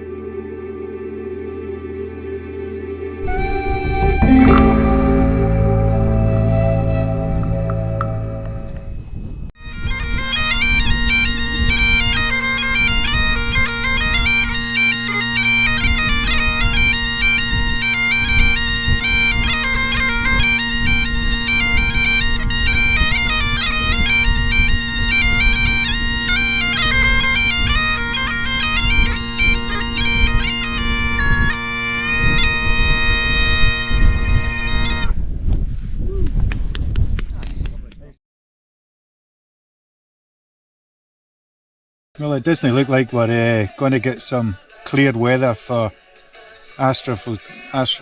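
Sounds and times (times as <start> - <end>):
bagpipes playing a tune: 0.0 - 8.8, 9.6 - 35.1
wind rumbling on microphone: 15.8 - 38.2.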